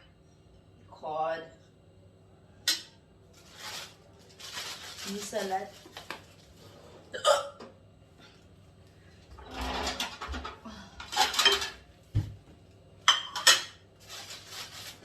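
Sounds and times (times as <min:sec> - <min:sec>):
woman hiccuping: 0:07.1 - 0:07.6.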